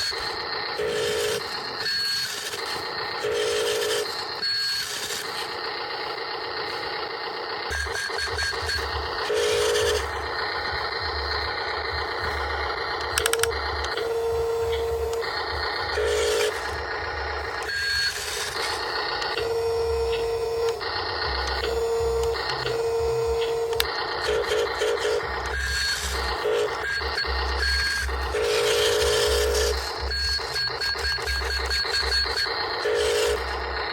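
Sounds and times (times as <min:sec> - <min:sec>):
electronic beeps: 0:07.7 - 0:33.9.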